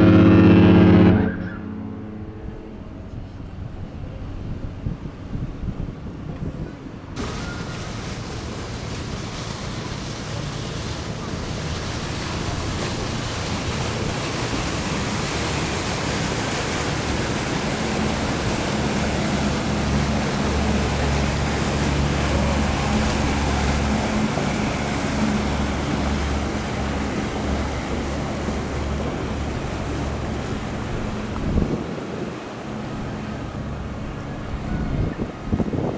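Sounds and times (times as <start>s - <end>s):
low hum: 0.0s - 5.2s, 16.6s - 35.7s
wind on microphone: 0.0s - 7.6s, 11.5s - 35.9s
water washing: 7.0s - 35.9s.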